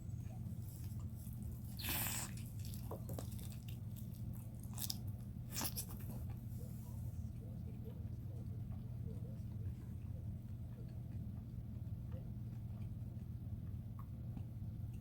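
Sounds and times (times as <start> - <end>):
steady low hum: 0.0 - 15.0
crunching of crispy chicken skin: 1.2 - 6.2.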